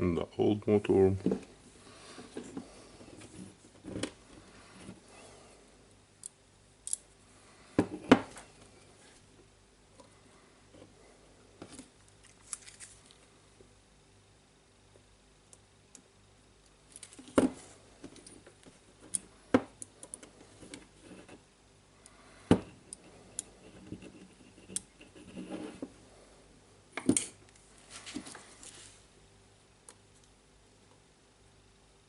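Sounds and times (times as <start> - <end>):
rustling: 11.6 - 13.3.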